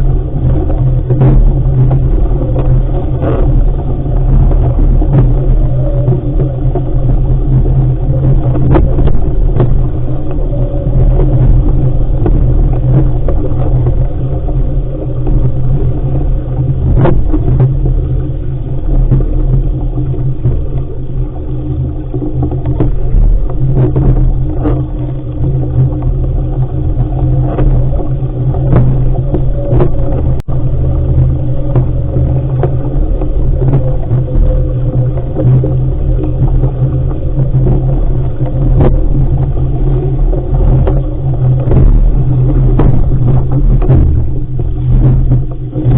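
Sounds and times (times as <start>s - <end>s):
water noise: 0.0s - 45.9s
wind rumble on microphone: 0.0s - 45.9s.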